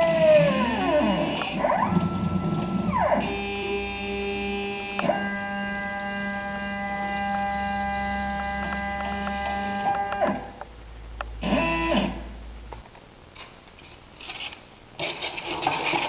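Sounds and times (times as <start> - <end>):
stepper motors whining: 0.0 - 10.6.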